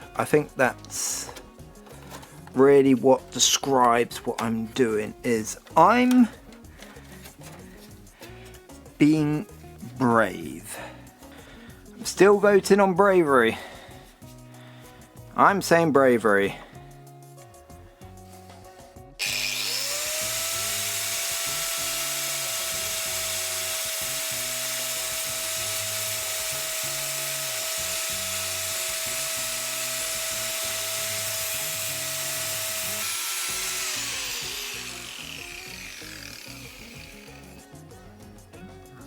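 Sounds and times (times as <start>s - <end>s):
loud hiss: 19.2s - 37.6s
power tool motor whine: 19.2s - 37.6s.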